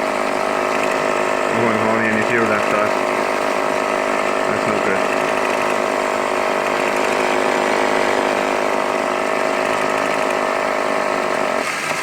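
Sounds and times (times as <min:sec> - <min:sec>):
toy motor whirring and rattling: 0:00.0 - 0:12.0.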